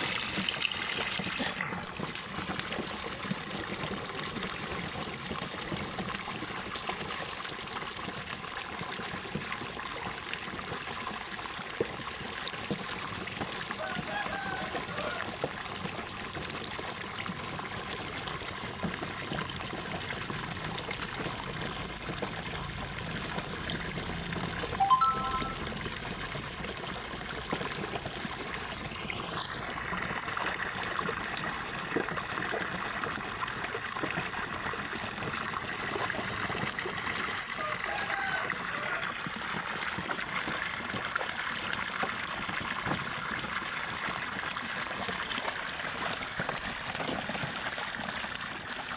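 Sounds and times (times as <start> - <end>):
water pouring into a pond: 0.0 - 48.9
brief high chirp: 24.8 - 25.8.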